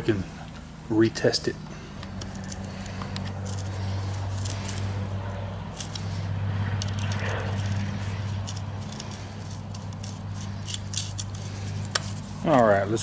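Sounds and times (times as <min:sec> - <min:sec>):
steady low hum: 0:00.0 - 0:13.0
screwdriver and metal parts clicking: 0:02.2 - 0:05.0, 0:05.7 - 0:06.2, 0:06.8 - 0:12.2.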